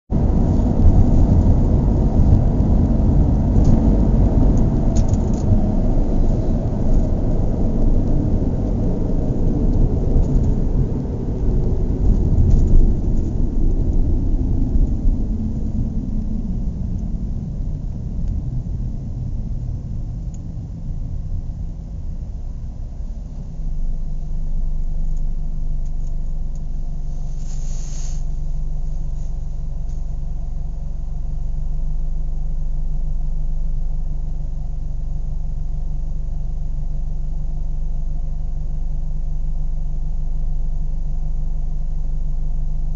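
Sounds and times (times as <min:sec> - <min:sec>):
car engine revving and idling: 0:00.1 - 0:42.9
short hiss: 0:27.1 - 0:28.4.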